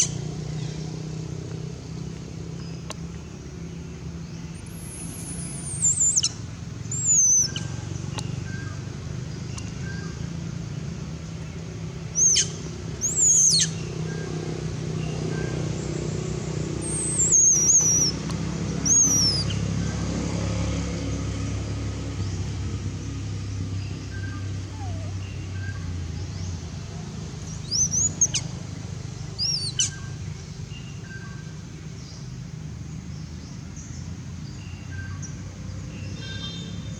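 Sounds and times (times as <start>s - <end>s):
low engine hum: 0.0s - 36.9s
baby monkey squealing: 12.2s - 13.8s, 16.8s - 18.2s, 18.8s - 19.6s, 24.7s - 25.2s, 27.6s - 28.5s.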